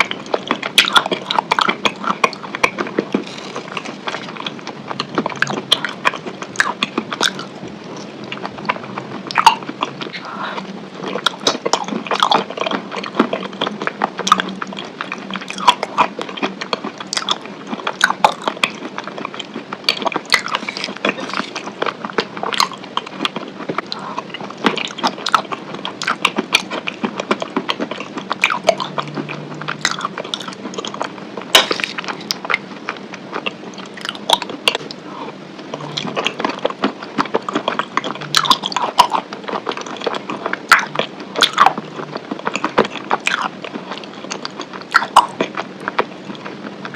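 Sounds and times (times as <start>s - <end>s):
person chewing crunchy food: 0.0s - 46.9s.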